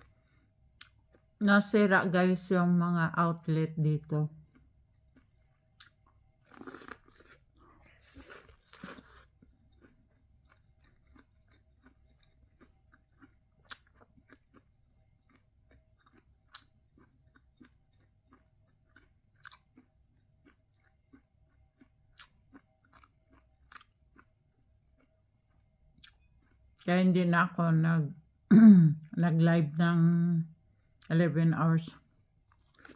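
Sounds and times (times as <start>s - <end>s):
chewing and biting corn: 4.4s - 26.8s, 32.4s - 32.9s.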